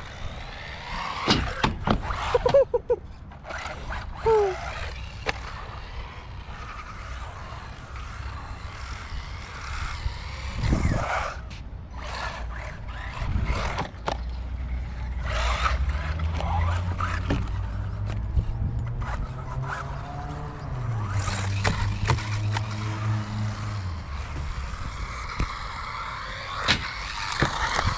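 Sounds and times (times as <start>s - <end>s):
sharp knocks from landings: 1.2s - 2.6s, 24.2s - 27.9s
tyres scraping on concrete: 3.3s - 18.2s, 19.0s - 27.9s
electric motor whining: 3.7s - 27.9s.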